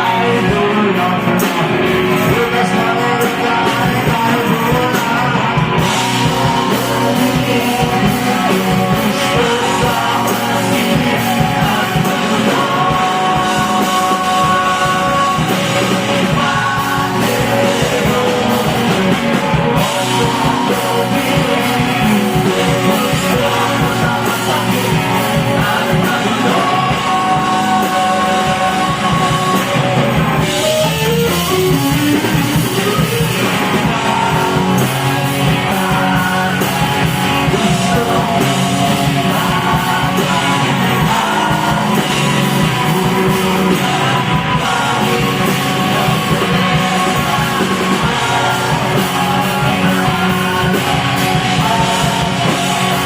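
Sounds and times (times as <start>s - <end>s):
electric guitar: 0.0s - 53.0s
live rock band playing: 0.0s - 53.0s
person singing and yelling: 0.0s - 53.0s.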